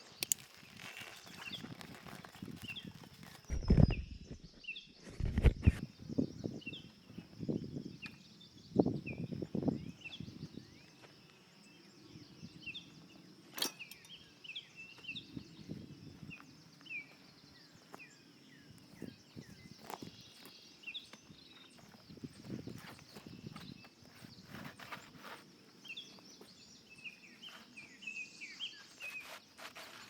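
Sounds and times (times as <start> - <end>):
small birds chirping: 0.0 - 30.0
low thumps and rustles: 1.5 - 5.9
sharp click: 13.5 - 14.1.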